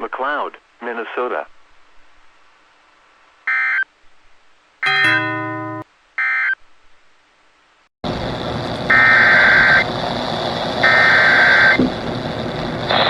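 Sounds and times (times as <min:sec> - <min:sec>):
hissing radio signal: 0:08.1 - 0:13.0.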